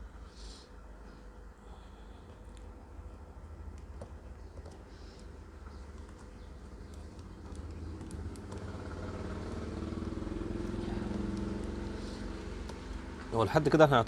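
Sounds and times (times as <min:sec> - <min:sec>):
vehicle engine running: 0:07.3 - 0:13.9.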